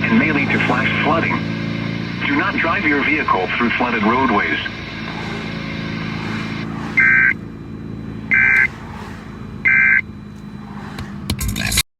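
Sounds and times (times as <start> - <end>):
two-tone digital data bursts: 0.0 - 8.8, 9.6 - 10.2
steady low hum: 0.0 - 11.8.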